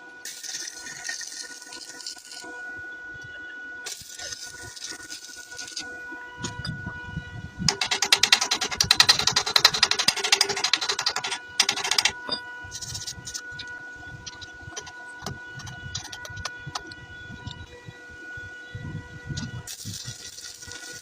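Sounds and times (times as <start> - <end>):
welding arc crackling: 0.0 - 2.6, 3.8 - 6.0, 7.7 - 17.0, 19.4 - 21.0
steady tonal hum: 0.0 - 21.0.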